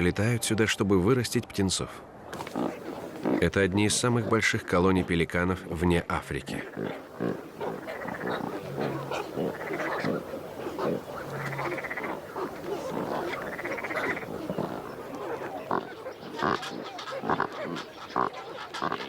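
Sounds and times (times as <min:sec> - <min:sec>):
buzzy rasping bird calls: 0:02.4 - 0:03.5, 0:06.6 - 0:19.0
pelicans grunting and calling: 0:02.4 - 0:05.2, 0:06.5 - 0:19.0.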